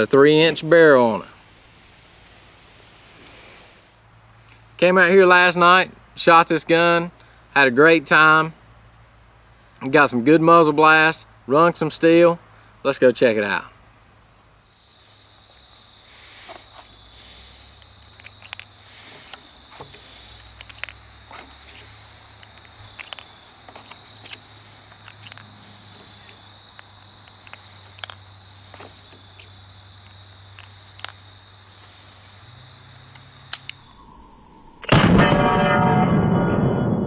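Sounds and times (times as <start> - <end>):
crickets trilling: 14.6 - 34.2.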